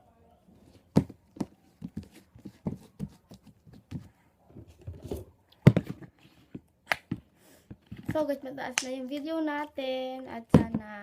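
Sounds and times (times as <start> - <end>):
slime slap: 6.9 - 7.2.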